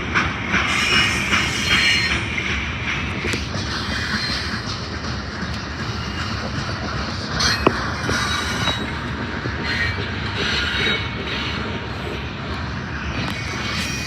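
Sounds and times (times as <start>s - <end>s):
train wheels rumbling on rail: 0.0s - 14.0s
wheel squeal: 5.8s - 12.2s, 13.1s - 14.0s.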